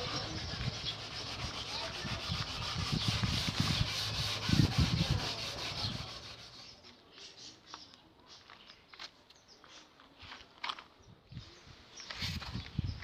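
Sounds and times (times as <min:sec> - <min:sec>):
rubbing strokes on hard surface: 0:00.0 - 0:07.0.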